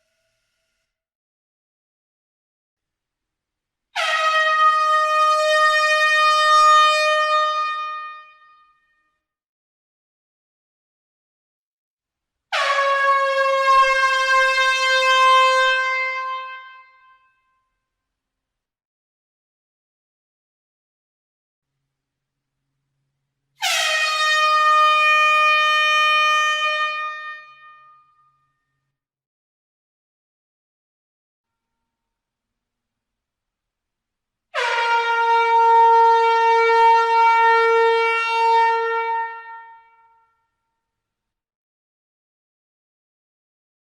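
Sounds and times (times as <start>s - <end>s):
air horn long blast: 4.0s - 8.7s, 12.5s - 17.2s, 23.6s - 28.2s, 34.5s - 40.3s.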